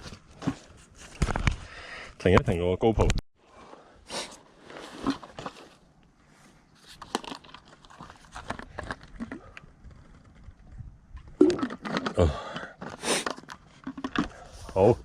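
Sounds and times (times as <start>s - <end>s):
gear clicks and crinkles: 7.0s - 10.8s.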